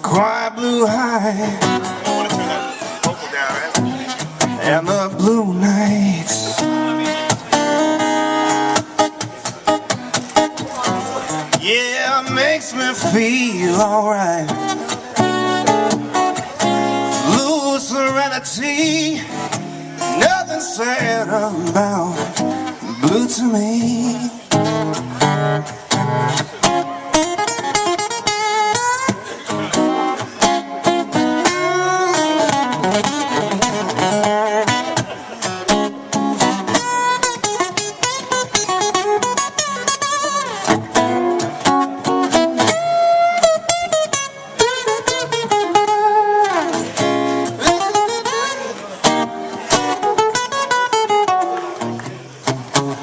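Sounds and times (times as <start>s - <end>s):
guitar picked and strummed: 0.0s - 53.0s
live band instrumental: 0.0s - 53.0s.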